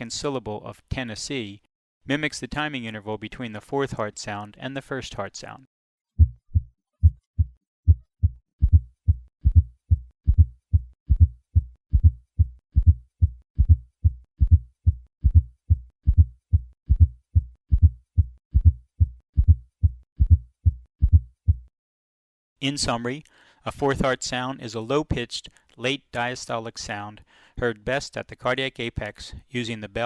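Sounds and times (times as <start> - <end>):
heartbeat thuds: 6.2 - 21.7.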